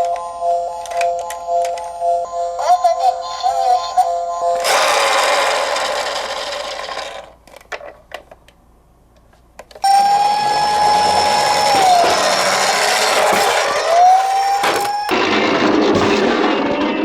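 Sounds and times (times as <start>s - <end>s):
toy siren tone: 9.8s - 15.2s.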